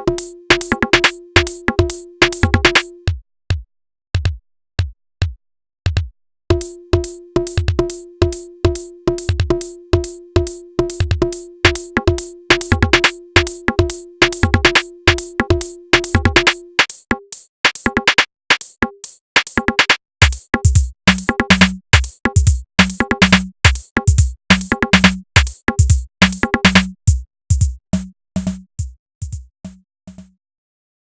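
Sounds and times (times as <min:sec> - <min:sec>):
drum machine beat: 0:00.0 - 0:03.6, 0:04.2 - 0:30.4
deep kick drum: 0:02.4 - 0:06.1, 0:20.2 - 0:21.8, 0:22.4 - 0:29.5.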